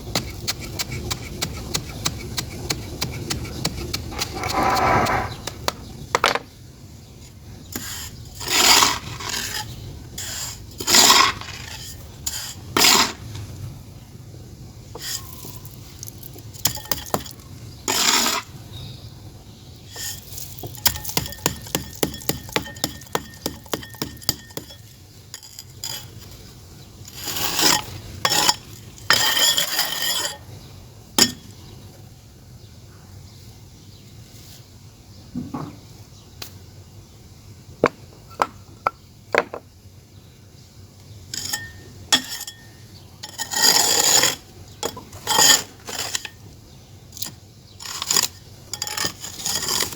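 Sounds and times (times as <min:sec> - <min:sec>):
hands scraping clay pot: 0:00.0 - 0:06.0, 0:07.7 - 0:13.3, 0:15.0 - 0:18.5, 0:19.9 - 0:26.5, 0:27.1 - 0:30.4, 0:43.2 - 0:46.4, 0:47.2 - 0:49.9.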